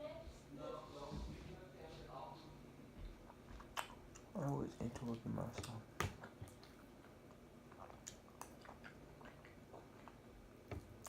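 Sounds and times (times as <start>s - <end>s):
faint close-up chewing: 3.2s - 11.0s
wet mouth clicks: 7.7s - 10.2s.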